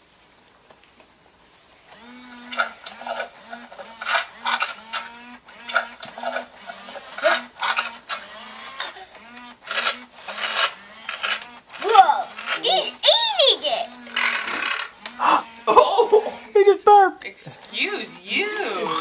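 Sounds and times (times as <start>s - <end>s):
toy dinosaur motor and chewing: 1.9s - 16.5s.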